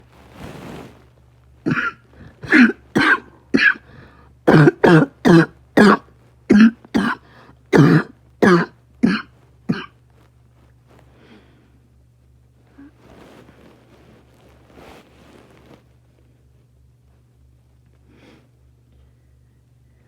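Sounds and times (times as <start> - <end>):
person coughing: 1.7 - 9.9.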